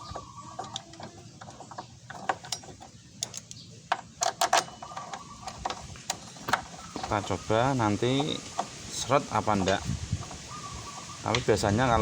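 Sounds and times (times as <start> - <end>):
hand tools clicking on metal: 0.0 - 7.3.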